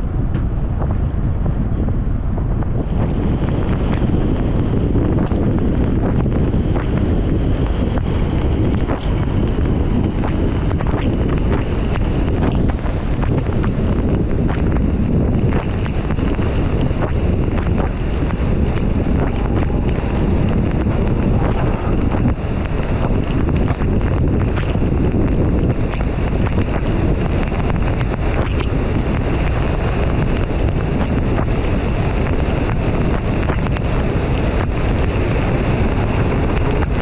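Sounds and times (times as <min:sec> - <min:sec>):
wind buffeting the microphone: 0:00.0 - 0:37.0
thin high whine: 0:16.0 - 0:32.8.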